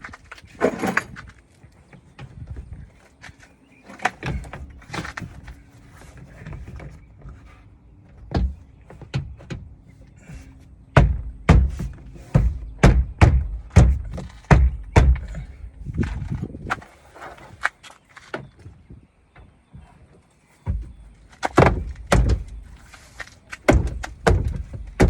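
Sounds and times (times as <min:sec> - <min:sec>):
heavy thuds on car door: 0:10.3 - 0:15.7, 0:20.7 - 0:22.8, 0:23.7 - 0:25.0.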